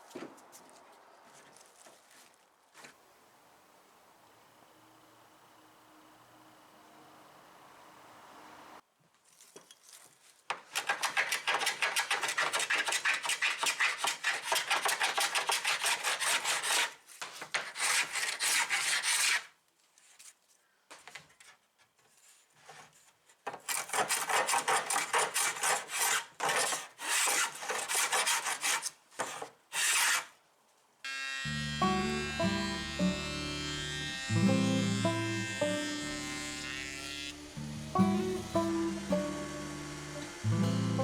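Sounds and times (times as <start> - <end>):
sanding wood by hand: 23.7 - 30.3.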